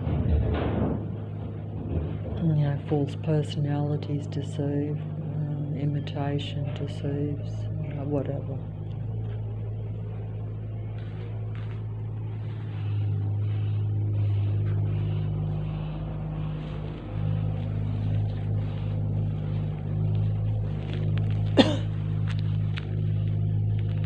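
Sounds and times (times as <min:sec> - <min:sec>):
low mechanical hum: 0:00.0 - 0:24.0.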